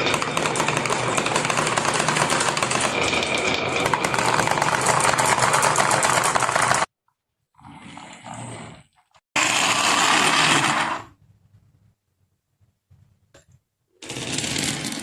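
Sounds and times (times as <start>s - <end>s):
marbles rattling down track: 0.0s - 6.9s, 14.0s - 15.0s.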